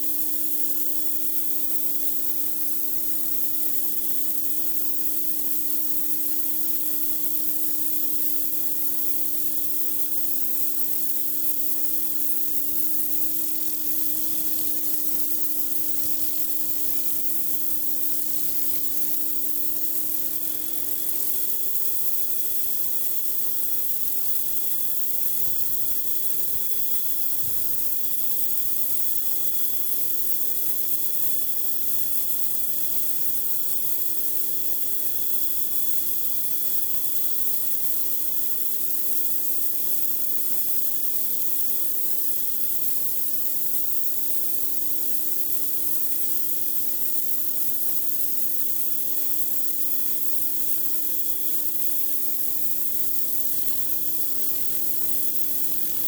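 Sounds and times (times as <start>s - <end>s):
pressure washer spraying concrete: 8.9s - 24.0s, 46.8s - 56.0s
machine hum: 10.1s - 21.7s, 52.8s - 56.0s.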